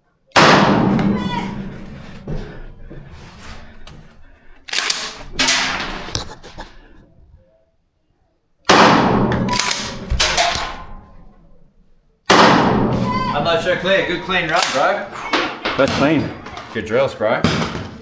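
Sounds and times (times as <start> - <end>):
rifle shots echoing: 0.4 - 2.0, 4.7 - 6.1, 8.7 - 11.6, 12.3 - 16.2.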